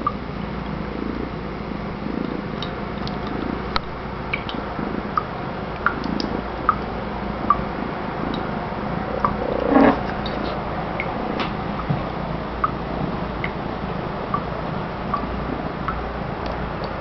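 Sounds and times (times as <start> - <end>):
steady hiss: 0.0 - 17.0
water dripping into sink: 2.2 - 7.7, 8.3 - 8.6, 12.6 - 13.6, 14.3 - 17.0.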